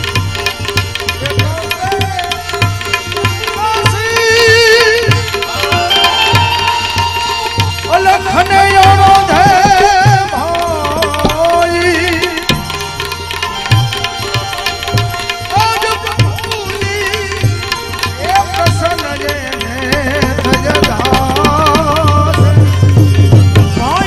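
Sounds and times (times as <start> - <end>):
tabla playing a steady rhythm: 0.0 - 24.0
sliding wavering melody: 5.1 - 9.1, 12.2 - 18.2.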